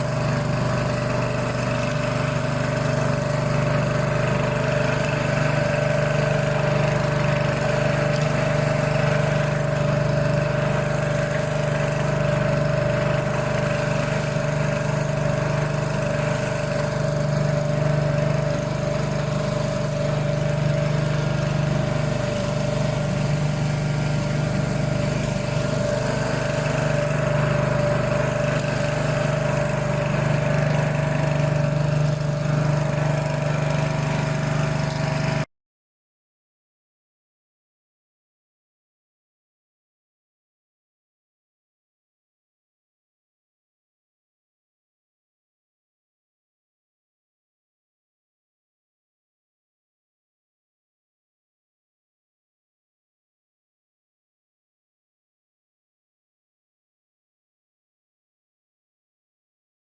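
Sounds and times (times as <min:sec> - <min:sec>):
pressure washer engine running: 0:00.0 - 0:35.5.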